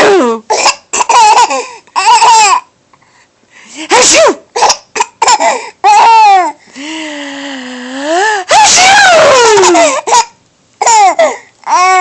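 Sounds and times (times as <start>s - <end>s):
baby laughing: 1.0s - 2.6s, 9.4s - 11.9s.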